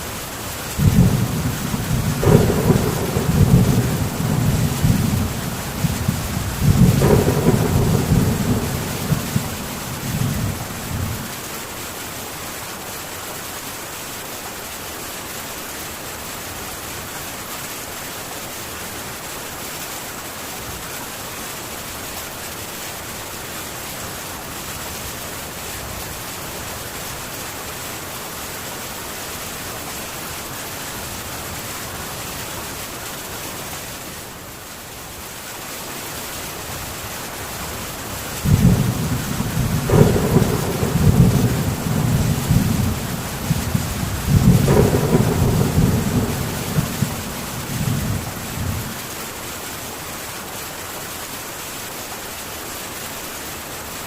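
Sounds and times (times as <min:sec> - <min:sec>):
rain on a tin roof: 0:00.0 - 0:54.0
low rumble of thunder: 0:00.8 - 0:11.4, 0:38.4 - 0:49.1.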